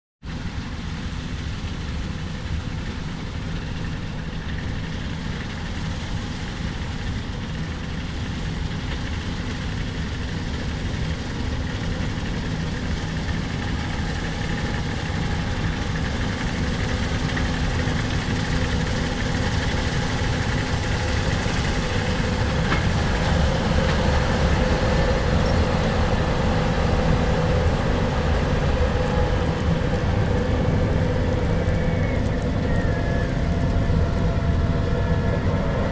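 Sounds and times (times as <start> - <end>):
combine harvester engine drone: 0.2 - 35.9
machinery noise: 9.7 - 35.9.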